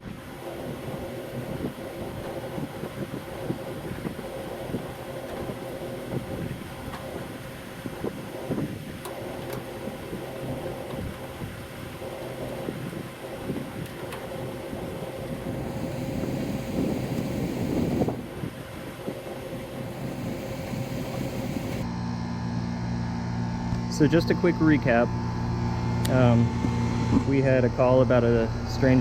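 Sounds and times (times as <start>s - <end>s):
rough wind-like noise: 0.0s - 21.9s
steady mechanical hum: 0.0s - 29.0s.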